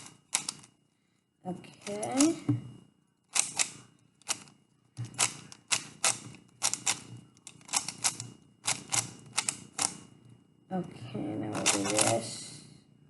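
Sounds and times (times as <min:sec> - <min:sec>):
puzzle cube layers clacking: 0:00.0 - 0:00.7, 0:03.3 - 0:10.0, 0:11.6 - 0:12.2.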